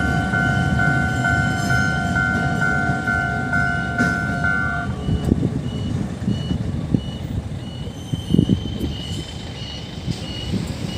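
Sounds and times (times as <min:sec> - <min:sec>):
level crossing warning bell: 0:00.0 - 0:06.5
heavy traffic rumble: 0:00.0 - 0:10.9.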